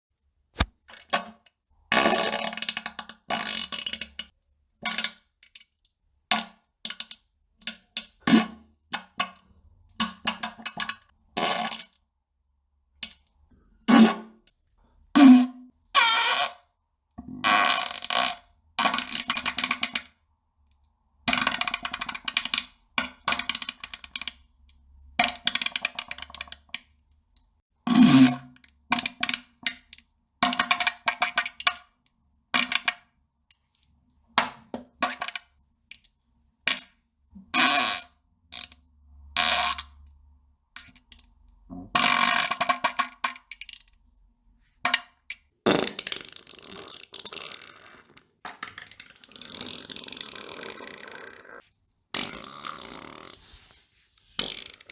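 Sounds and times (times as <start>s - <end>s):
fart sound effects: 45.7s - 48.3s, 49.1s - 51.6s, 52.2s - 53.6s.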